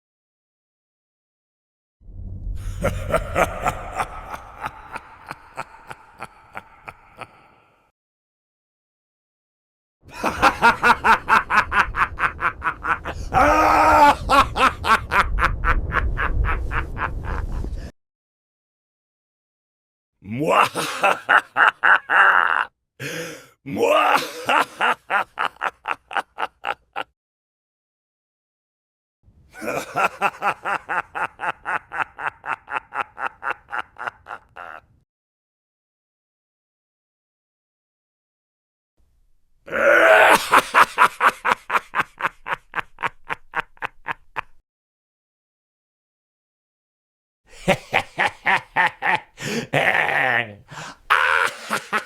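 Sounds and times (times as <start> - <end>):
evil villain cackling laugh: 2.6 - 7.8, 10.1 - 17.9, 20.3 - 22.7, 23.7 - 27.1, 29.6 - 35.0, 39.8 - 44.6, 47.5 - 52.0.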